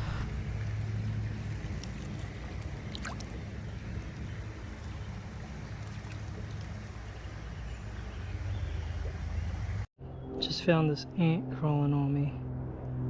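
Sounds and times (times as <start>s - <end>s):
creek water rushing: 0.0s - 9.9s.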